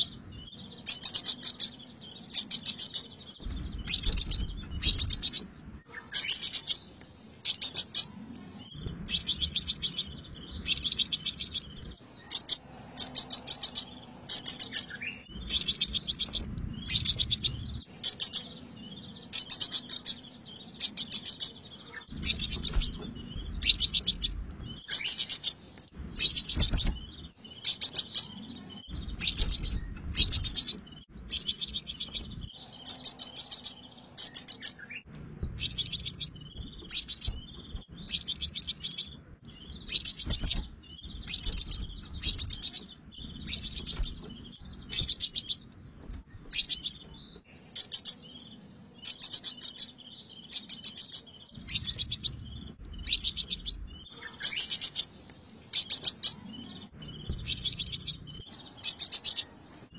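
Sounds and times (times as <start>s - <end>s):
bird chirping high and thin: 0.0s - 59.6s.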